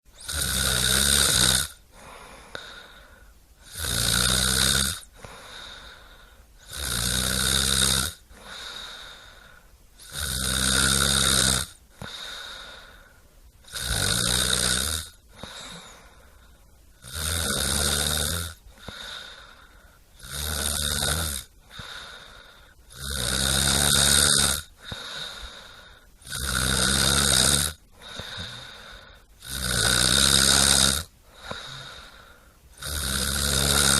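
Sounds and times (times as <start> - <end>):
loud snoring: 0.2 - 2.9, 3.6 - 9.4, 10.0 - 13.0, 13.6 - 16.1, 17.0 - 33.9
quiet breathing: 1.7 - 3.9, 4.9 - 6.8, 7.8 - 10.3, 11.6 - 14.0, 14.8 - 17.1, 17.7 - 20.4, 21.4 - 23.1, 24.6 - 33.9.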